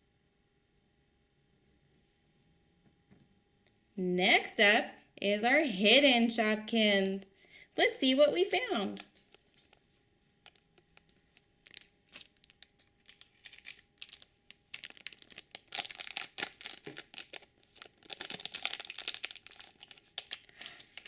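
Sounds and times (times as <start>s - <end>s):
plastic packaging crinkling and tearing: 9.0s - 21.0s.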